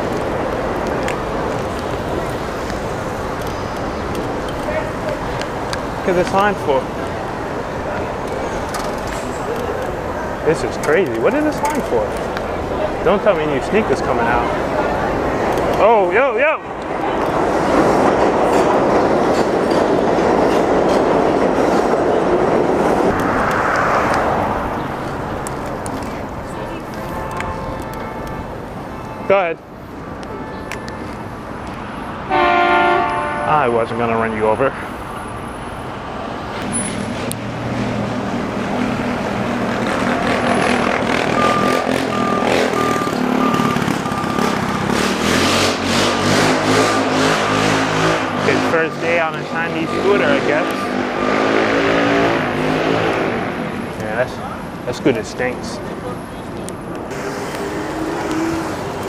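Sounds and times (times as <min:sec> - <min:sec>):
traffic engines and road noise: 0:00.0 - 0:59.0
train rumbling on track: 0:00.0 - 0:59.0
short high beeps: 0:41.3 - 0:44.6.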